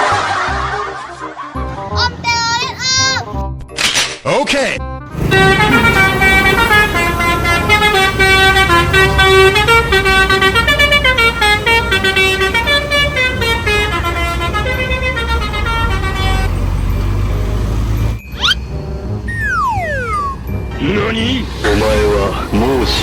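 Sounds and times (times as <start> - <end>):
bus horn playing a tune: 5.1 - 17.1
bus engine rumble: 5.1 - 23.0.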